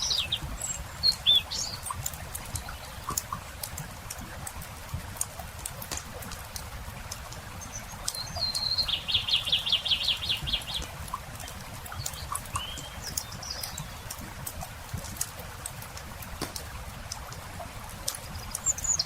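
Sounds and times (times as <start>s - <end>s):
bird chirps: 0.0s - 2.0s, 7.6s - 10.9s, 11.5s - 14.2s
campfire crackling and popping: 0.0s - 19.0s
songbird trilling: 7.6s - 10.9s, 12.0s - 14.0s.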